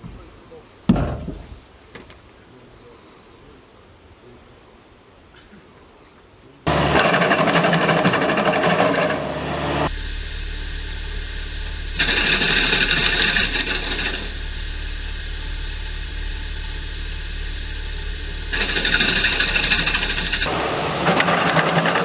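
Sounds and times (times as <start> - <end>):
higher rattling noise: 6.7 - 9.9
wood chipper running: 6.7 - 22.0.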